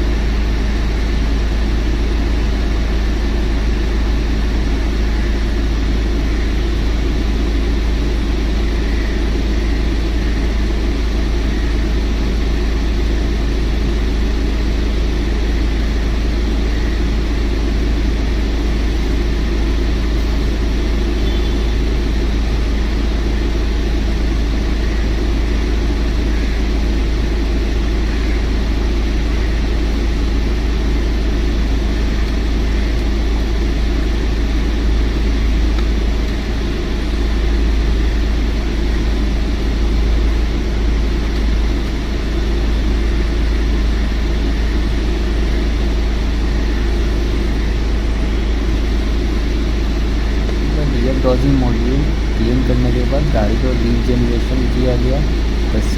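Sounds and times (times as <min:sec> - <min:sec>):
diesel engine idling: 0:49.2 - 0:55.9.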